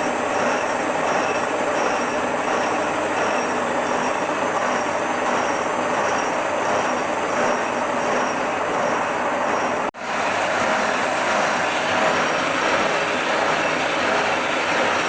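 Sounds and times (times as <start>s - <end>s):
machine tool grinding metal: 0.0s - 9.9s.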